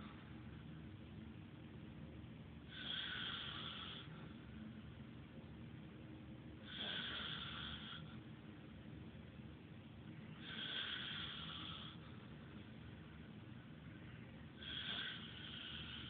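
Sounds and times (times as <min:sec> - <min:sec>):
man snoring: 0:02.7 - 0:04.1, 0:06.6 - 0:08.1, 0:10.4 - 0:12.0, 0:14.6 - 0:16.0.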